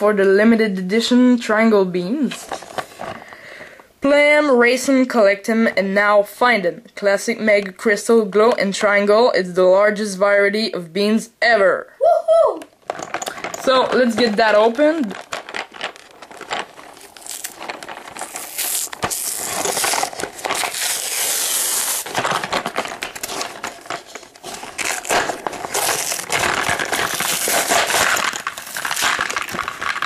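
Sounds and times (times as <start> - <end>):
toy packaging being torn open: 12.8 - 30.0.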